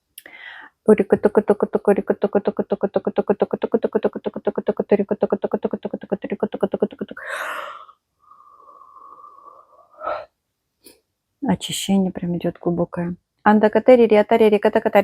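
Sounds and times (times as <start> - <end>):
breathy exhale: 0.3 - 0.8, 7.2 - 10.3
woman chanting syllables rapidly: 0.9 - 7.3.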